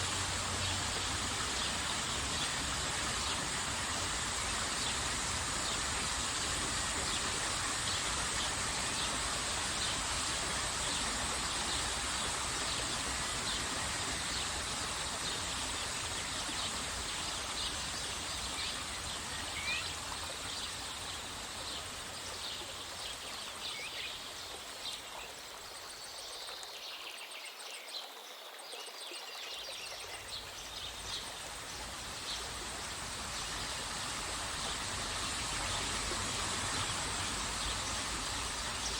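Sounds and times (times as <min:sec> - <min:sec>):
waterfall rushing: 0:00.0 - 0:24.4, 0:30.4 - 0:38.9.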